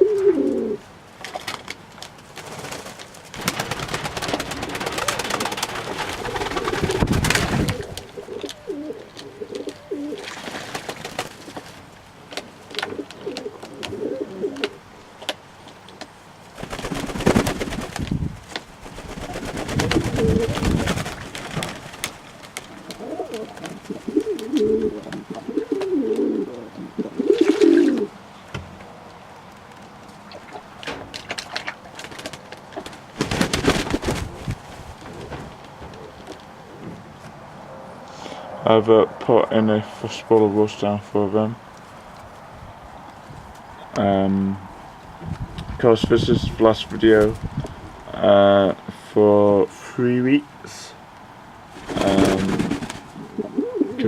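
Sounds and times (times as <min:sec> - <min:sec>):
doves cooing: 0:00.0 - 0:00.9, 0:01.5 - 0:18.2, 0:18.8 - 0:29.0, 0:30.1 - 0:38.4, 0:51.6 - 0:54.0.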